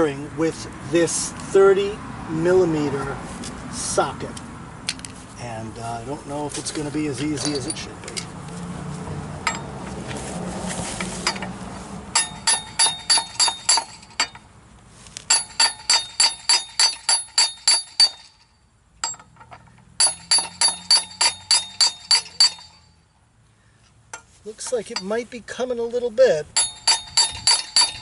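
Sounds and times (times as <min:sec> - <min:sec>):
hammer striking steel socket: 0:09.4 - 0:09.7, 0:12.2 - 0:14.4, 0:15.3 - 0:22.8, 0:26.6 - 0:28.0.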